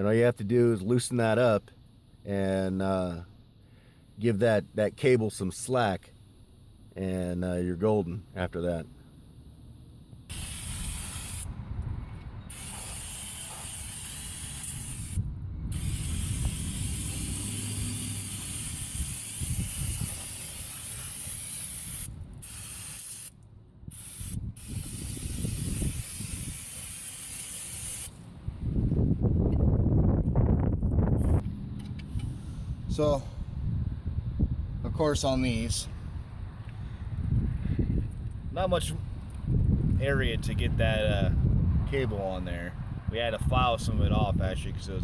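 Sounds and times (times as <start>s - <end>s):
aerosol spray hissing: 10.2s - 11.5s, 12.5s - 28.2s.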